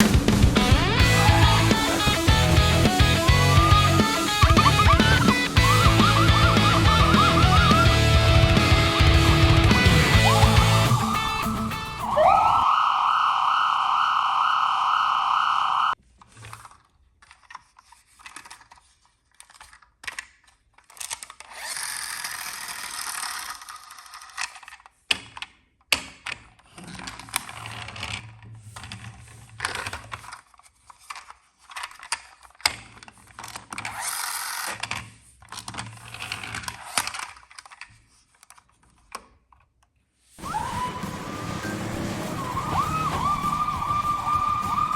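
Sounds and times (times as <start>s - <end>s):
plastic toy cars clicking and rattling: 16.0s - 44.9s
toy cars rolling across surface: 16.2s - 25.0s, 26.6s - 39.6s, 40.3s - 44.9s.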